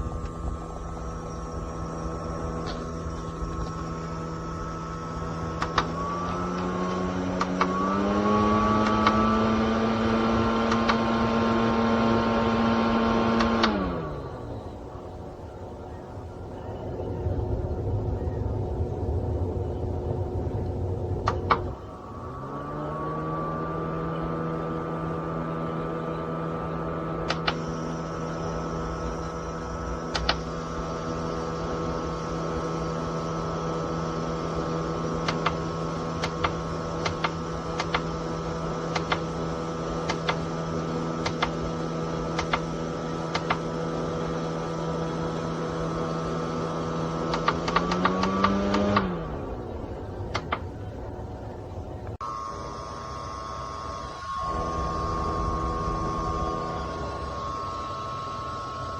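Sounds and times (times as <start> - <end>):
electric fan whirring hum: 0.0 - 58.9
sharp clicks: 5.5 - 8.0, 8.7 - 9.5, 10.5 - 11.3, 13.3 - 14.1, 27.2 - 27.7, 30.1 - 30.5, 35.2 - 38.2, 38.8 - 39.4, 40.0 - 40.5, 41.2 - 43.7, 47.2 - 49.2, 50.3 - 50.8.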